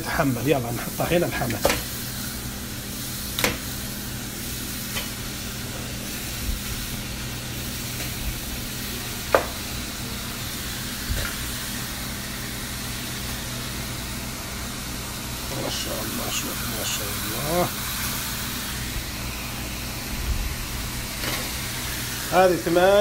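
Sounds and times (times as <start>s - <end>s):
meat sizzling in a pot: 0.0s - 23.0s
knocks against a pot: 9.3s - 9.6s.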